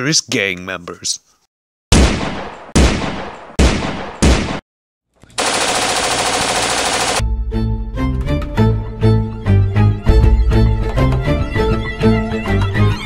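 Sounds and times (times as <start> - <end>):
single gunshots: 1.9 - 4.6
machine-gun burst: 5.4 - 7.2.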